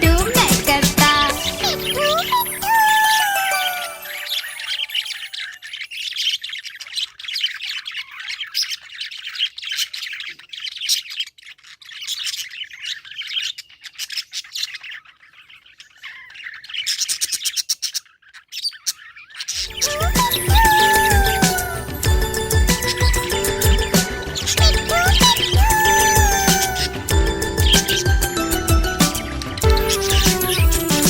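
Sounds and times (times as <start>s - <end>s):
music: 0.0s - 5.2s, 19.6s - 31.0s
budgerigars chirping: 4.3s - 31.0s.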